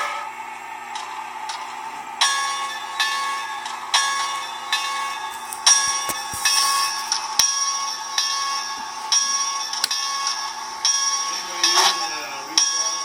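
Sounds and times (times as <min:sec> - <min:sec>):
locomotive bell ringing: 0:02.2 - 0:05.3, 0:07.5 - 0:13.0.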